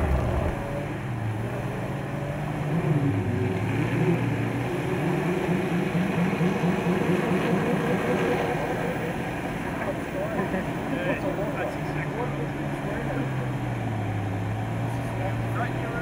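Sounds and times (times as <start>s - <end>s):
engine revving under load: 0.0s - 1.8s.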